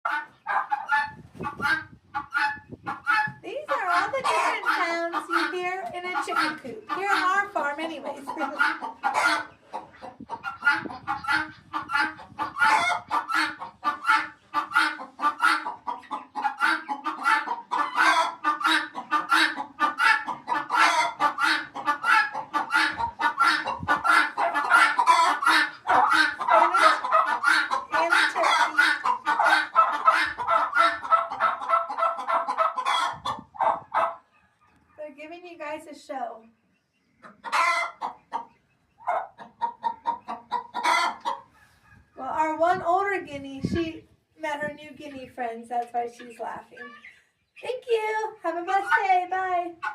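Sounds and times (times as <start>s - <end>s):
chickens clucking: 0.1s - 49.9s
guinea fowl laughing calls: 8.0s - 34.3s, 37.2s - 42.1s.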